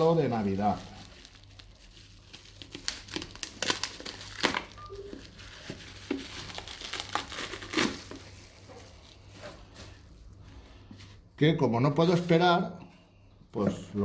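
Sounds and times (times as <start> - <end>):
packaging crinkling and rustling: 0.0 - 10.4.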